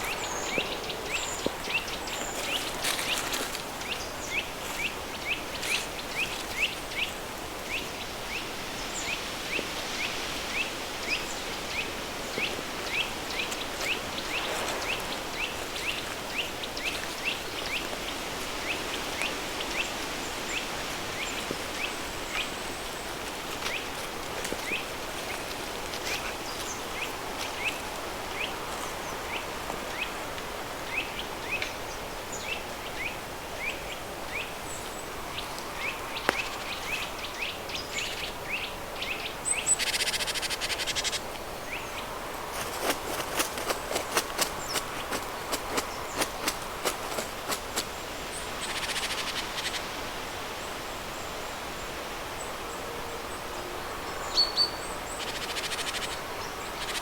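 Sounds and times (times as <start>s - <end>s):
river stream rushing: 9.9s - 26.4s
pink noise: 11.0s - 22.6s.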